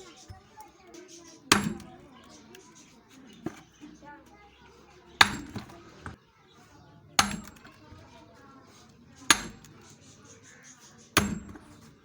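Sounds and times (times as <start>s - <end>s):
hammer striking wood: 1.5s - 2.0s, 5.2s - 6.2s, 7.2s - 7.8s, 9.3s - 9.9s, 11.2s - 11.9s.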